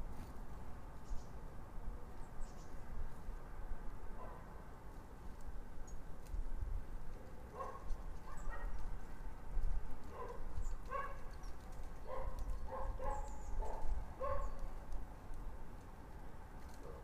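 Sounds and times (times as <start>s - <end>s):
dog barking: 4.2s - 4.5s, 7.5s - 8.8s, 10.1s - 11.2s, 12.0s - 14.6s.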